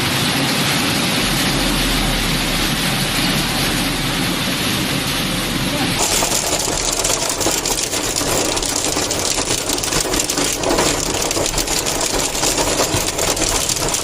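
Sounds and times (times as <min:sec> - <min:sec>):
hailstones pelting hard surface: 0:06.0 - 0:14.0.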